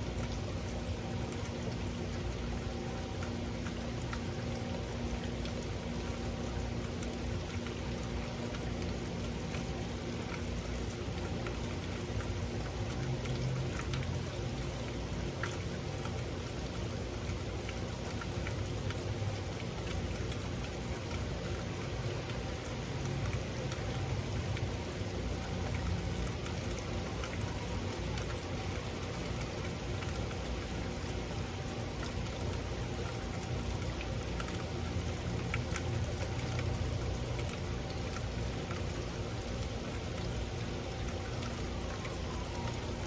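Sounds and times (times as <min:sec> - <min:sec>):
raindrops ticking on a surface: 0:00.0 - 0:43.0
steady rain hiss: 0:00.0 - 0:43.0.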